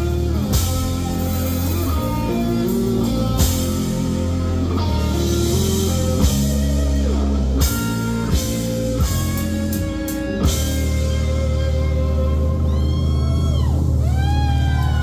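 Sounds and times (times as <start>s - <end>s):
guitars playing chords: 0.0s - 15.0s.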